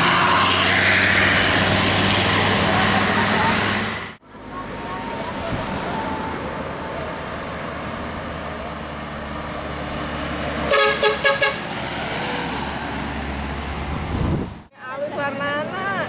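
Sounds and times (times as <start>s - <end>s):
road traffic rumble: 0.0s - 16.0s
vehicle horn tooting: 10.7s - 11.7s.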